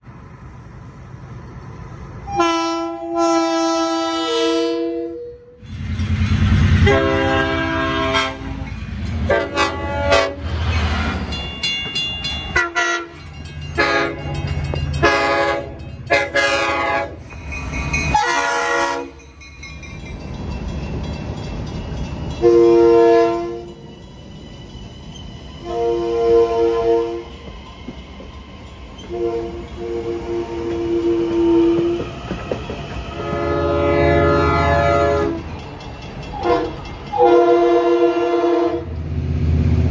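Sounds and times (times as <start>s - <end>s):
train rumbling: 0.0s - 39.9s
train horn chord blasts: 2.2s - 5.6s, 6.7s - 8.7s, 9.3s - 10.5s, 12.5s - 13.2s, 13.8s - 17.3s, 18.1s - 19.2s, 22.4s - 23.8s, 25.6s - 27.3s, 29.1s - 32.0s, 33.2s - 35.4s, 36.3s - 38.9s.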